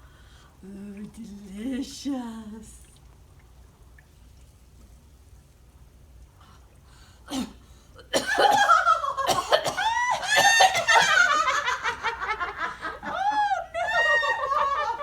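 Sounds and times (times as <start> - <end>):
high-pitched cackling laughter: 9.9 - 15.0.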